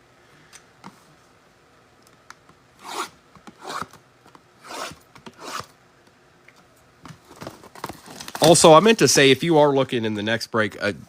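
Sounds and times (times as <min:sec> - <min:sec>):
card packs swishing: 0:07.4 - 0:08.9.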